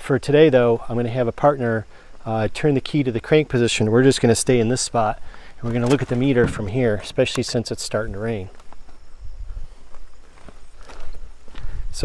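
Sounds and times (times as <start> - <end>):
soft footsteps: 5.0 - 9.1, 9.8 - 11.6.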